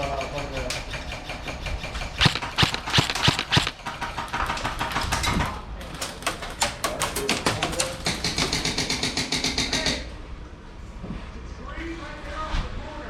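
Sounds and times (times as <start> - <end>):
airsoft guns firing: 1.8 - 5.6.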